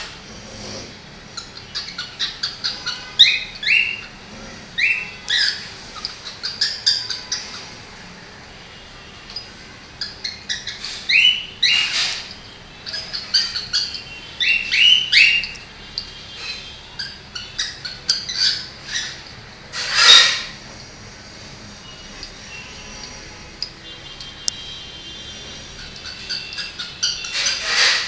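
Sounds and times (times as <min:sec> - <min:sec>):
cockatiel chirping and whistling: 0:01.4 - 0:04.1, 0:10.0 - 0:12.2, 0:12.9 - 0:15.6, 0:25.8 - 0:28.0
cockatiel squawking: 0:01.4 - 0:04.2, 0:04.8 - 0:07.7, 0:10.0 - 0:12.2, 0:12.9 - 0:15.5, 0:16.4 - 0:19.2, 0:19.8 - 0:20.5, 0:25.8 - 0:28.0.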